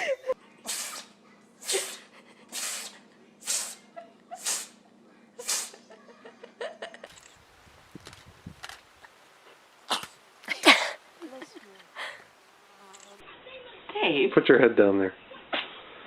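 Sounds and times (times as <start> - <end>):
pet animal sneezing: 0.6 - 4.8, 5.4 - 5.8.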